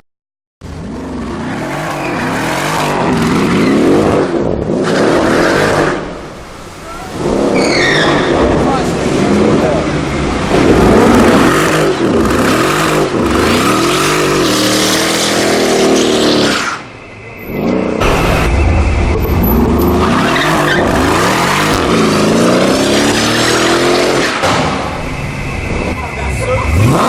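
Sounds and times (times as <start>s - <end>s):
car engine revving hard: 0.6s - 6.1s, 7.2s - 16.8s, 19.3s - 24.5s, 26.3s - 27.0s
tyres squealing: 6.8s - 8.4s.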